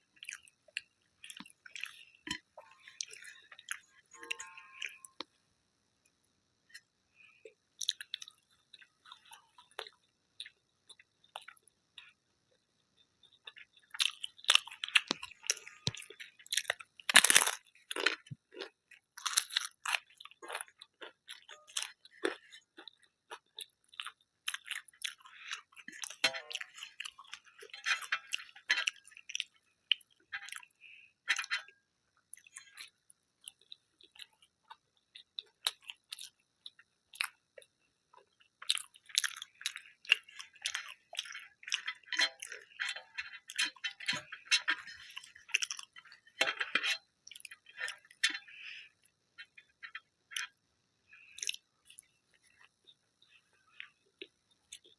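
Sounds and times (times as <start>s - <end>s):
crunchy chewing: 0.0s - 5.4s, 6.7s - 54.9s.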